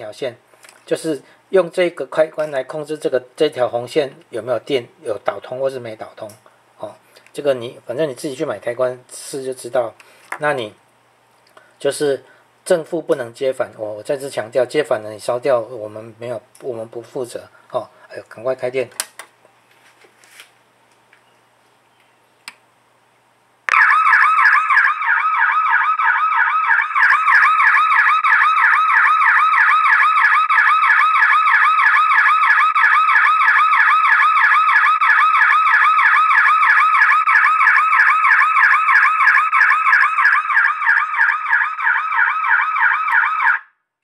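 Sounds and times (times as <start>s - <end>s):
warbling electronic siren: 23.7s - 43.8s.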